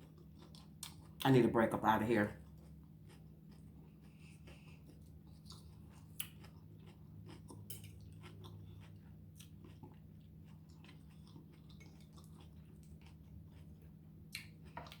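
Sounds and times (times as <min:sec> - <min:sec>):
faint chewing: 0:00.0 - 0:01.3, 0:02.2 - 0:15.0
low steady hum: 0:00.0 - 0:15.0.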